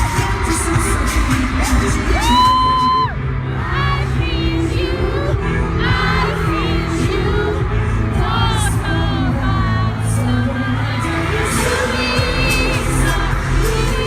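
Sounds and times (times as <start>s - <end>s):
crowd cheering and screaming: 0.0s - 14.0s
pop song sung live: 0.0s - 14.0s.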